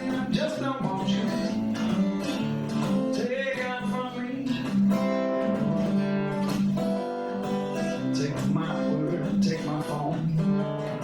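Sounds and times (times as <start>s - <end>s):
person singing: 0.0s - 5.0s, 7.8s - 11.0s
acoustic guitar strumming: 0.0s - 11.0s.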